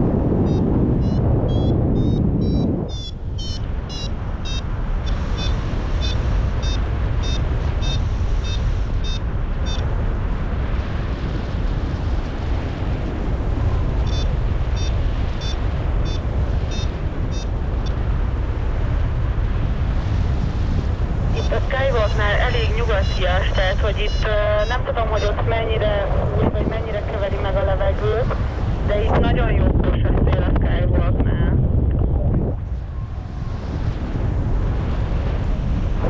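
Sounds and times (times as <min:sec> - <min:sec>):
wind buffeting microphone: 0:00.0 - 0:36.0
variometer beeping: 0:00.4 - 0:09.9, 0:14.0 - 0:18.0.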